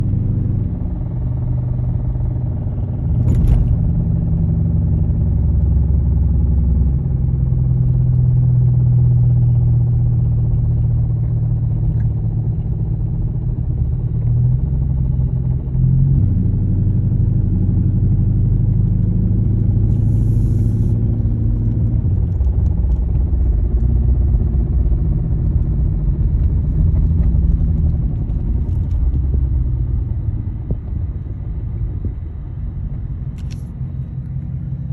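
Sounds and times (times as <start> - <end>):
car engine rumbling: 0.0 - 34.9
engine knocking noise: 20.6 - 32.7.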